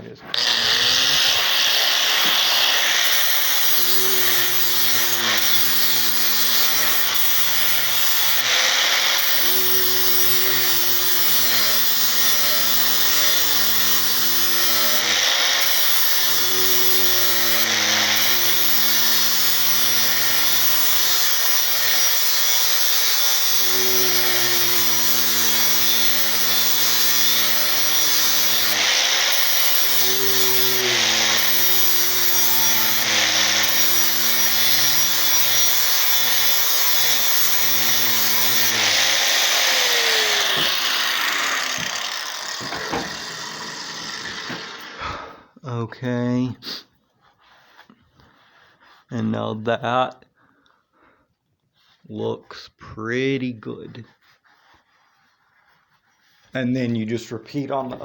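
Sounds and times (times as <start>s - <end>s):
angle grinder grinding steel: 0.0s - 45.5s.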